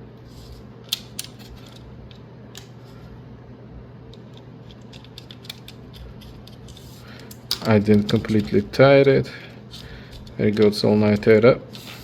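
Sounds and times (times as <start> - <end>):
steady low hum: 0.0 - 12.0
small parts clicking: 4.1 - 8.6.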